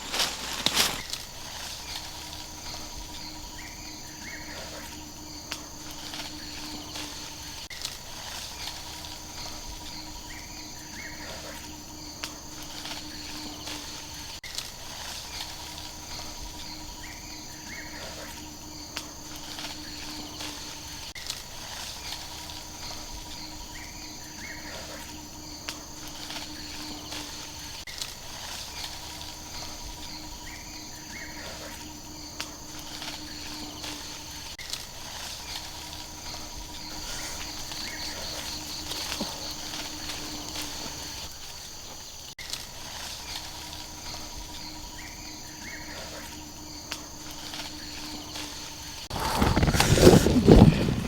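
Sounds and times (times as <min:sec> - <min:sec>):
insects chirring: 0:00.0 - 0:51.0.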